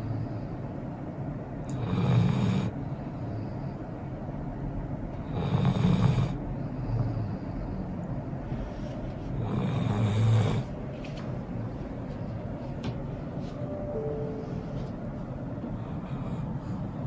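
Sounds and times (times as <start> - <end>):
dog snoring: 1.7 - 2.8, 5.2 - 7.9, 9.3 - 10.8, 15.8 - 17.0
dog breathing: 5.2 - 10.8.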